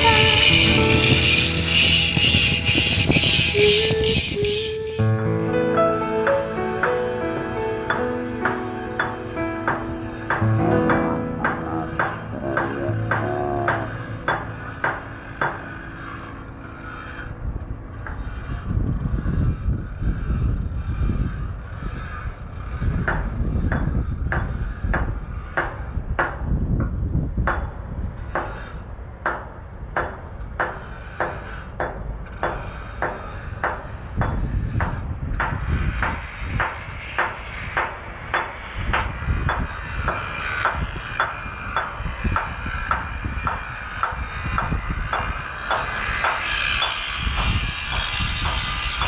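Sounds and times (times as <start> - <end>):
hammer striking: 0.0 - 5.1, 7.8 - 17.3, 27.5 - 49.0.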